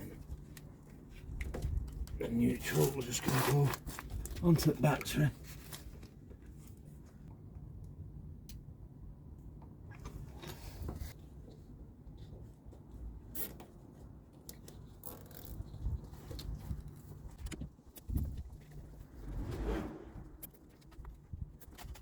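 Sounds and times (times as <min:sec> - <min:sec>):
steady low rumble: 0:18.3 - 0:21.3.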